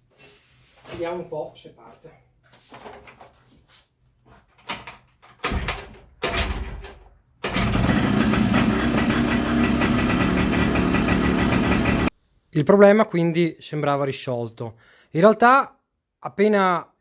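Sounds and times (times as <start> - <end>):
scooter kick-start: 5.5 - 12.1
two-stroke scooter engine running: 7.5 - 12.1.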